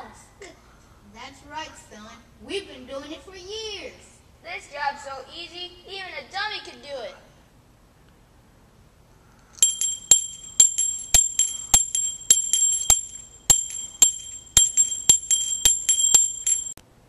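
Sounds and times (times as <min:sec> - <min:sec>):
handbell ringing: 0:09.6 - 0:16.8.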